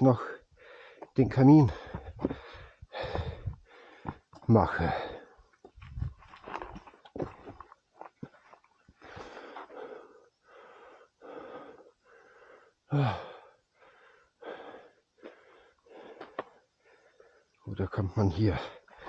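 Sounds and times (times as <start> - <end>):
man breathing hard: 0.3 - 5.4, 9.0 - 17.6.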